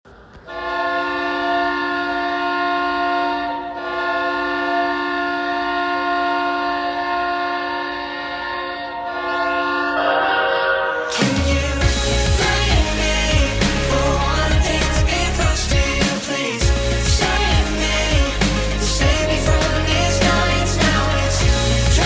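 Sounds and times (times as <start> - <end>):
hockey goal horn: 0.5 - 11.2
music: 11.1 - 22.0.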